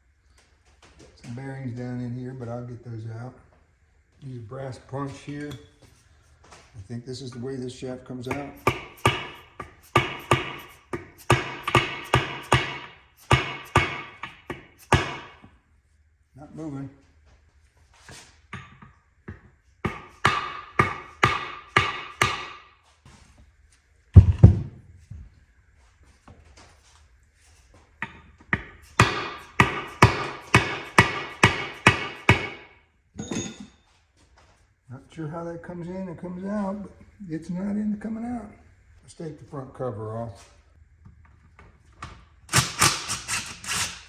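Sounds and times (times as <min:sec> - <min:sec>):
hammer striking metal punch: 0:08.2 - 0:15.5, 0:18.5 - 0:22.7, 0:24.2 - 0:24.7, 0:28.0 - 0:33.7.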